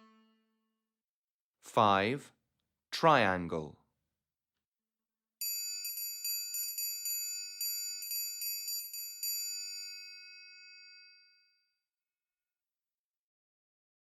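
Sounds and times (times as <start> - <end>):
metal triangle ringing: 5.4 - 11.1.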